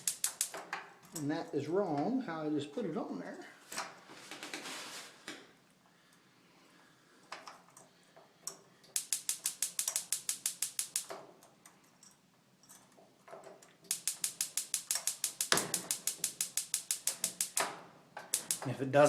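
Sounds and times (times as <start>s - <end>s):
gas range spark igniter clicking: 0.0s - 0.8s, 9.0s - 11.2s, 13.9s - 19.0s.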